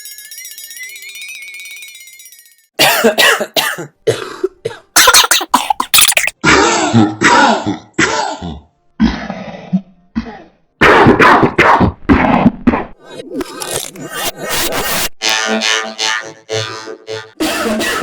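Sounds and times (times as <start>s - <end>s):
person coughing: 2.8s - 8.7s.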